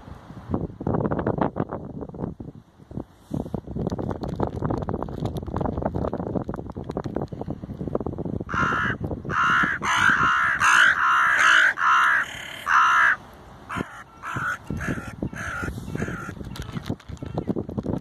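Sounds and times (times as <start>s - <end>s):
crows cawing: 8.5s - 16.4s.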